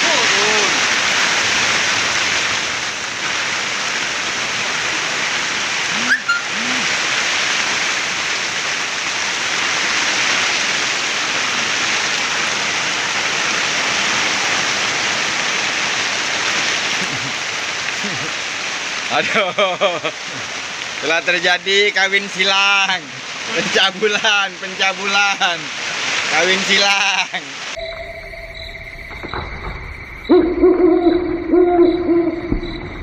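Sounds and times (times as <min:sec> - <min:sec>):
steady hiss: 0:11.9 - 0:27.8.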